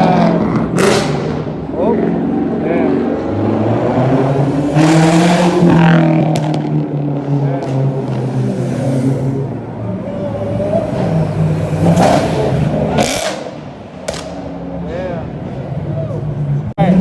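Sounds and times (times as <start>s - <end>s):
car engine revving: 0.0s - 15.7s
crowd voices: 0.0s - 17.0s.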